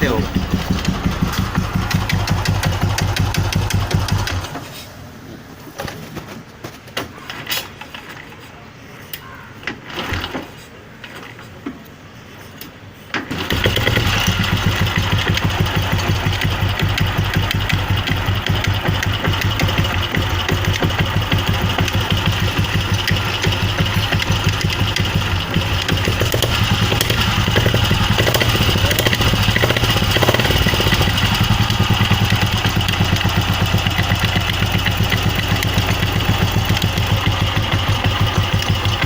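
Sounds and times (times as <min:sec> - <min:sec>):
motorcycle engine idling: 0:00.0 - 0:04.5, 0:13.7 - 0:39.0.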